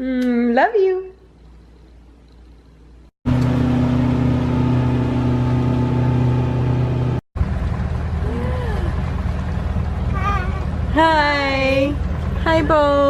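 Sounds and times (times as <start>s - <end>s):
motor running steadily: 3.3s - 13.0s.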